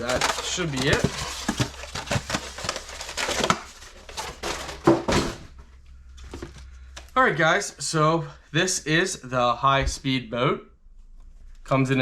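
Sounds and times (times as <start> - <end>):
packaging crinkling: 0.0 - 5.5.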